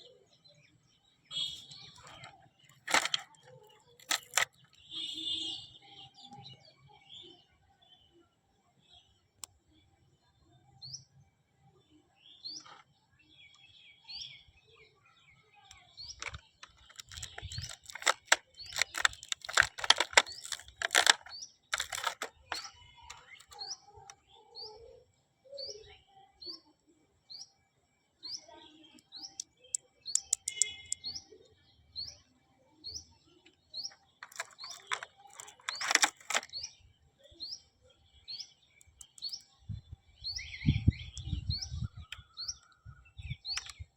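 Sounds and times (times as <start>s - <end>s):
bird chirping: 0.0s - 9.5s, 11.8s - 27.6s, 28.2s - 43.9s
plastic pieces clicking and rustling: 1.9s - 4.8s, 16.1s - 23.7s, 30.1s - 31.0s, 34.2s - 36.6s, 43.5s - 43.8s.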